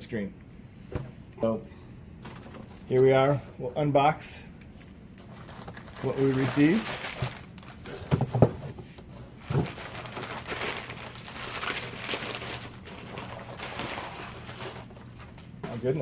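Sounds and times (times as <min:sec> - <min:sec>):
packaging rustling: 0:04.8 - 0:16.0.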